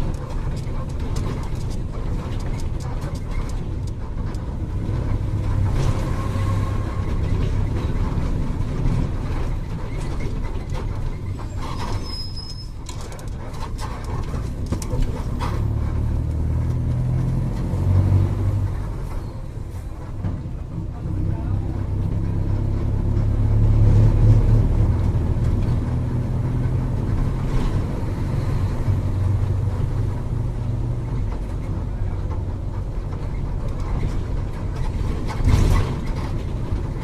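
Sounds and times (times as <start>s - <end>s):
clicks and rattles: 0.0s - 6.2s, 7.0s - 12.0s, 12.6s - 17.3s
diesel bus engine running: 0.0s - 37.0s
brief high squeal: 11.5s - 12.8s.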